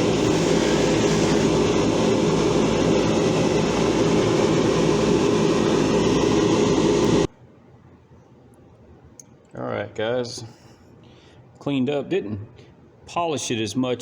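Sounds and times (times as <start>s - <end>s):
wire wheel grinding whir: 0.0s - 7.2s.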